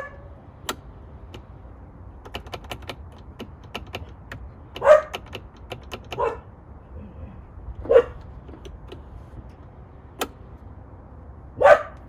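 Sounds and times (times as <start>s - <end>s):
plastic window switch clicking: 0.6s - 1.6s, 2.2s - 6.4s, 8.2s - 10.5s.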